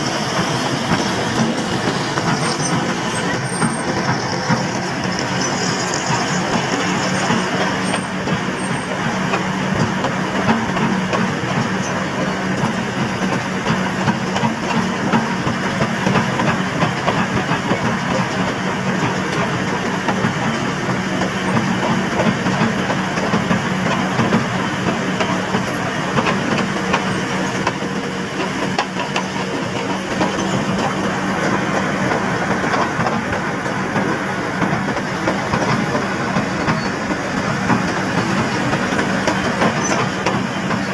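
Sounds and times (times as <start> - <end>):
diesel construction machinery running: 0.0 - 40.9.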